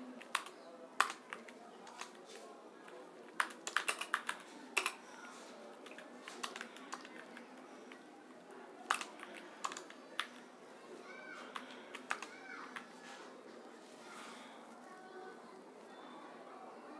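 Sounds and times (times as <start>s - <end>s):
keyboard keys clicking: 0.2s - 8.1s, 8.9s - 10.4s, 11.5s - 12.9s.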